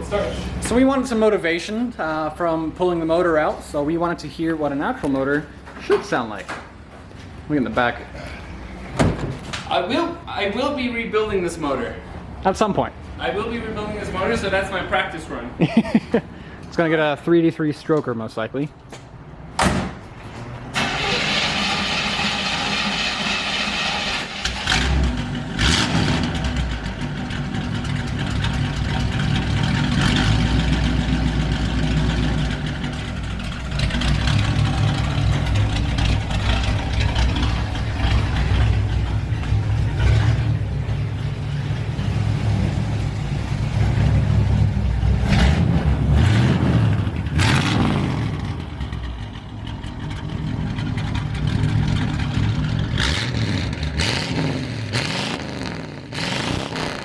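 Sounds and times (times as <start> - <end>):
car engine starting and revving: 20.7 - 57.0.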